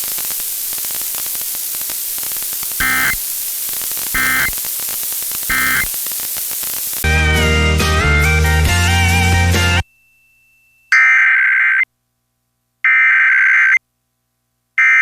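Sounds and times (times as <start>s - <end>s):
buzzy data tone bursts: 0.0s - 7.1s
radio static hiss: 0.0s - 7.1s.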